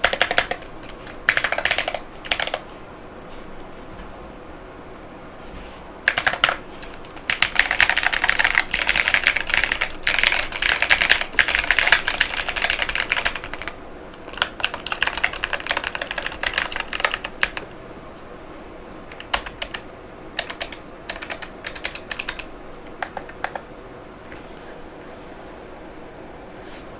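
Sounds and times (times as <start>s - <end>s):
typing on mechanical keyboard: 0.0s - 2.6s, 6.1s - 17.7s, 19.1s - 19.8s, 20.4s - 23.6s.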